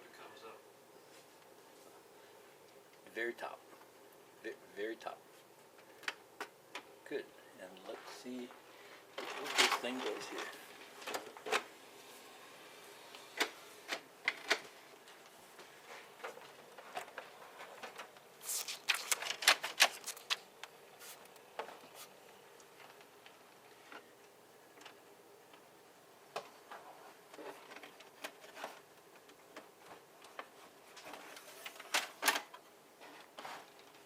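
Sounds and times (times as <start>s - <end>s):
printer mechanical clicks and clatter: 13.1s - 15.2s.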